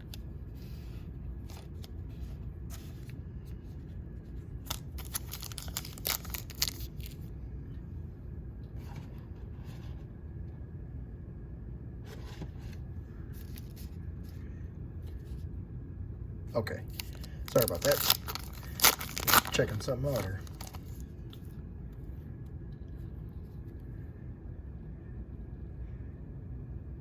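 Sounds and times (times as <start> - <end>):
low hum: 0.0 - 27.0
cards clicking and rustling: 4.7 - 7.2, 16.9 - 21.0.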